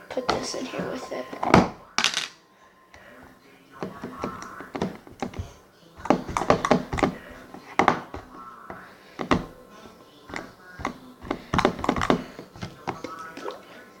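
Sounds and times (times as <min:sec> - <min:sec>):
slime squishing by hand: 0:03.8 - 0:13.6.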